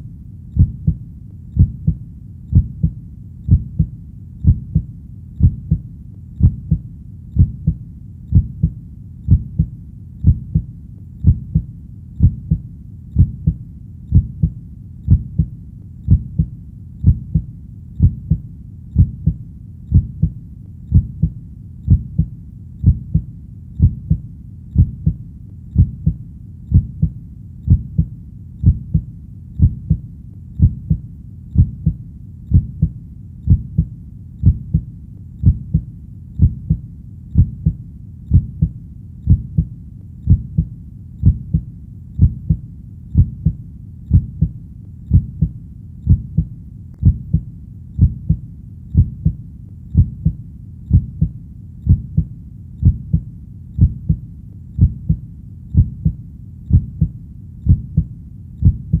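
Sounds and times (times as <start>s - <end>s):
heartbeat double thump: 0.6s - 1.0s, 1.6s - 5.8s, 6.4s - 6.8s, 7.4s - 12.6s, 13.2s - 15.5s, 16.1s - 18.4s, 19.0s - 24.2s, 24.8s - 25.2s, 25.8s - 30.0s, 31.6s - 32.9s, 33.5s - 36.8s, 37.4s - 39.7s, 40.3s - 42.6s, 43.2s - 47.4s, 48.0s - 48.4s, 49.0s - 49.4s, 50.0s - 51.3s, 51.9s - 53.2s, 53.8s - 54.2s, 54.8s - 55.2s, 55.8s - 57.1s, 57.7s - 59.0s.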